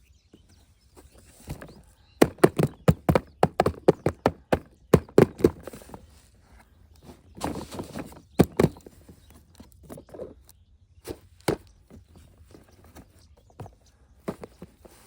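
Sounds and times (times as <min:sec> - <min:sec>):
toys and packaging knocking: 0:01.5 - 0:06.0, 0:07.4 - 0:09.1.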